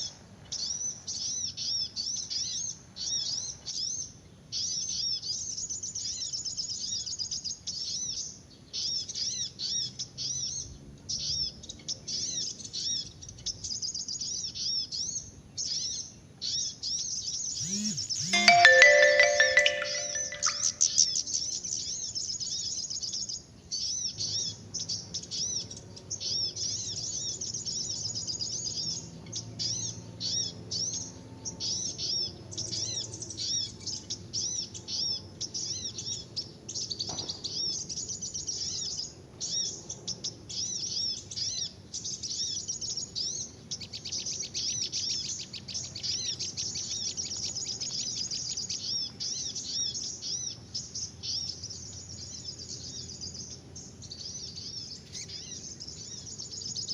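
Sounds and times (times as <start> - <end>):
small birds chirping: 42.0 - 56.9.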